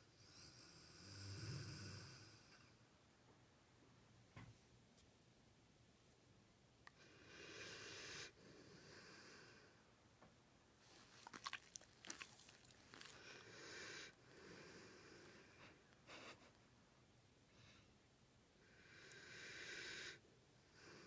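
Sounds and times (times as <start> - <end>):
dog snoring: 0.2 - 2.7, 7.0 - 9.7, 13.0 - 15.6, 18.6 - 21.0.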